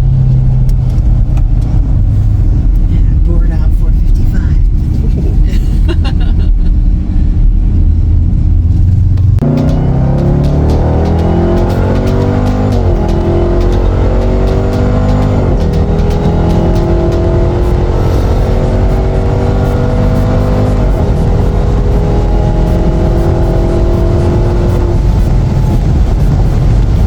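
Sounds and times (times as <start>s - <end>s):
car engine accelerating hard: 0.0s - 27.0s.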